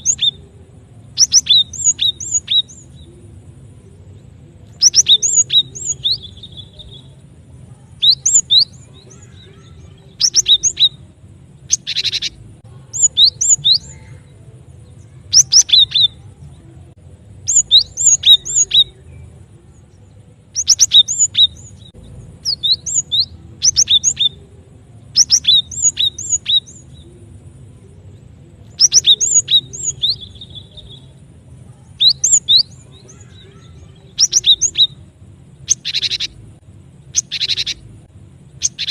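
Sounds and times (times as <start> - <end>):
faint low hum: 0.0 - 38.9
bird calling high sharp notes: 1.2 - 3.1, 7.8 - 11.1, 11.7 - 14.4, 17.4 - 19.1, 32.0 - 35.0, 35.6 - 36.4, 37.2 - 37.9, 38.6 - 38.9.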